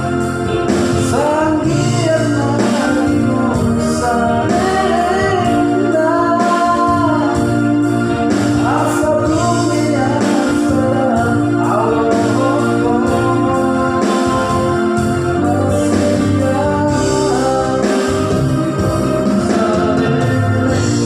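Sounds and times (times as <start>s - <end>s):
electronic keyboard accompaniment: 0.0s - 21.0s
person singing: 0.0s - 21.0s.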